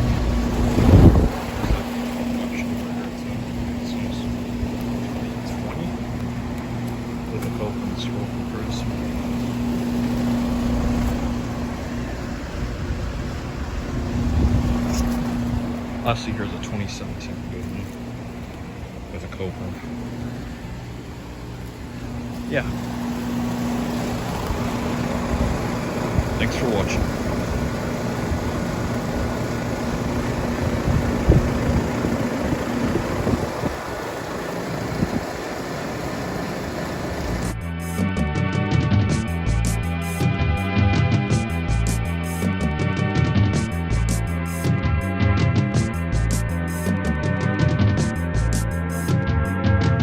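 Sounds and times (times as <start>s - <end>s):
condenser fan rushing: 0.0s - 37.6s
compressor hum: 0.0s - 37.9s.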